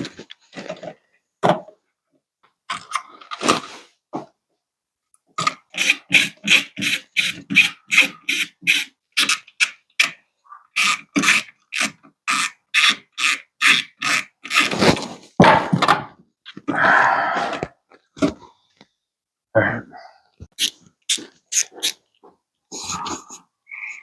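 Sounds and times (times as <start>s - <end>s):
heavy rub: 14.0s - 16.0s.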